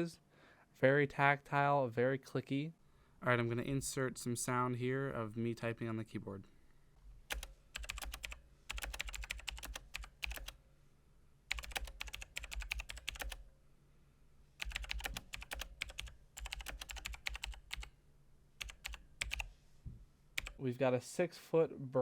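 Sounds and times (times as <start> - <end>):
mechanical keyboard typing: 7.3 - 10.6, 11.5 - 13.4, 14.6 - 17.9, 18.6 - 19.5, 20.4 - 20.6.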